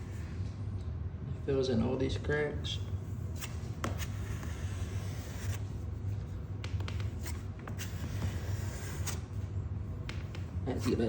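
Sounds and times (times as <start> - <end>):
scraping and rubbing on floor: 3.4 - 9.3.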